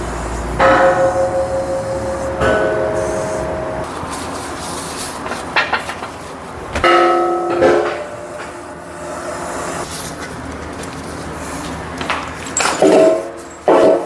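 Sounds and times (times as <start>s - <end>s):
ringing metallic tones: 0.6s - 3.9s, 6.8s - 9.6s
heavy steel parts clanking: 0.6s - 11.2s, 11.8s - 14.0s.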